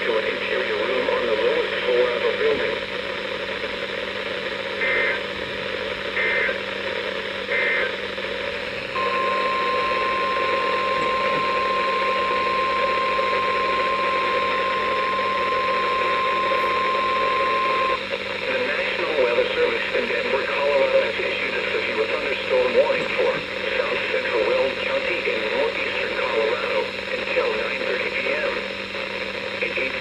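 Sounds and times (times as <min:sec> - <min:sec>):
radio hiss: 0:00.0 - 0:30.0
steady warning alarm tone: 0:04.7 - 0:20.7
digital data bursts: 0:04.8 - 0:05.3, 0:08.9 - 0:19.6.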